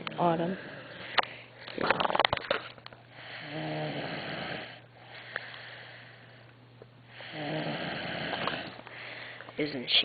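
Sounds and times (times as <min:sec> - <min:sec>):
loud buzzing snore: 0:03.2 - 0:06.3, 0:07.1 - 0:08.8
soft breath: 0:05.0 - 0:06.5, 0:08.4 - 0:09.6.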